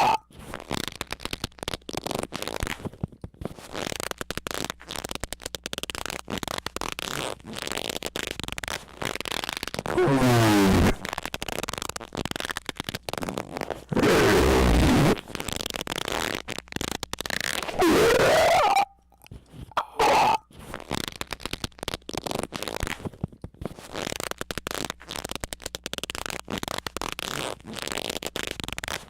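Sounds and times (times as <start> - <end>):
stuttering squeaks: 0.0 - 0.2, 8.8 - 20.4.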